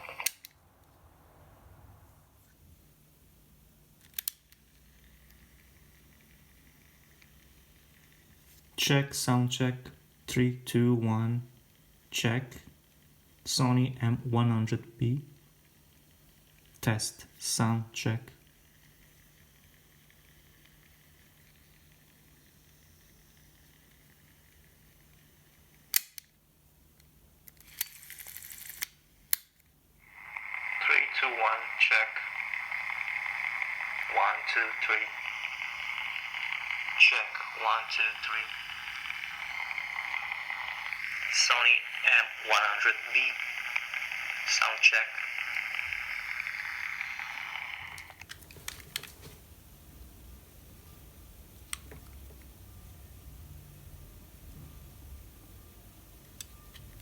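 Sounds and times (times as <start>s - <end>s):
tape mechanism whirring: 0.0s - 1.0s, 27.5s - 49.2s
tape hiss from small speaker: 0.0s - 27.1s, 29.9s - 57.0s.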